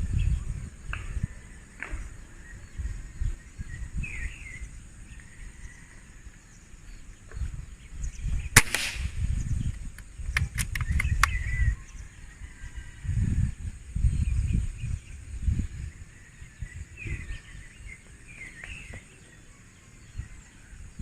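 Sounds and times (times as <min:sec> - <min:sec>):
wind rumble on microphone: 0:00.0 - 0:21.0
air rifle shot: 0:08.6 - 0:09.5
light clicks: 0:09.7 - 0:11.5.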